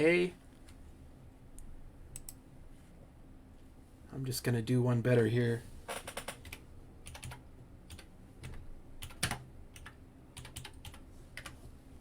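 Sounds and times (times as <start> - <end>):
typing on computer keyboard: 6.0 - 11.6.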